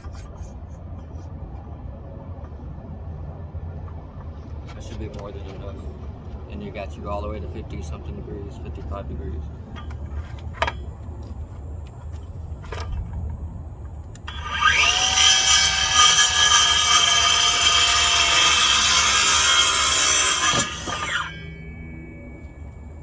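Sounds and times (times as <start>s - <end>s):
circular saw cutting wood: 14.2s - 23.0s.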